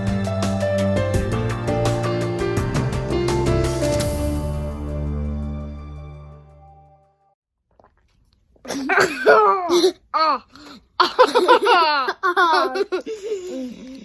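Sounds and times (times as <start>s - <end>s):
person laughing hard: 11.0s - 13.6s.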